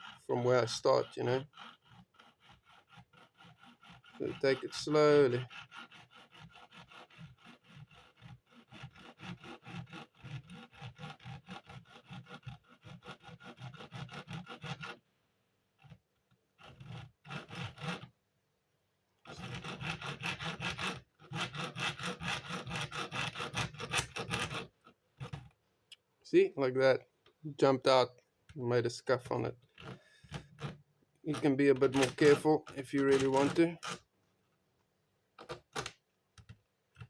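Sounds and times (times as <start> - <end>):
hacksaw sawing: 0.0 - 15.1, 15.7 - 18.1, 19.2 - 25.6, 28.6 - 34.1, 35.4 - 36.0.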